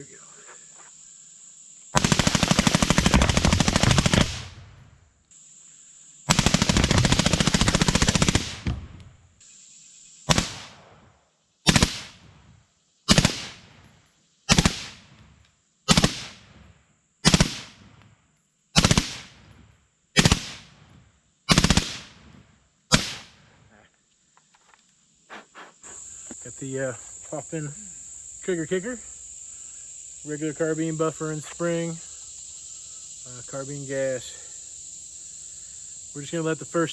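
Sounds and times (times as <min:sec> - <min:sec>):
rifle firing rapidly: 0:02.0 - 0:04.6, 0:06.3 - 0:08.8, 0:11.7 - 0:12.1, 0:13.1 - 0:13.6, 0:14.5 - 0:15.0, 0:15.9 - 0:16.4, 0:17.2 - 0:17.7, 0:18.8 - 0:19.3, 0:20.2 - 0:20.6, 0:21.5 - 0:22.1, 0:22.9 - 0:23.2.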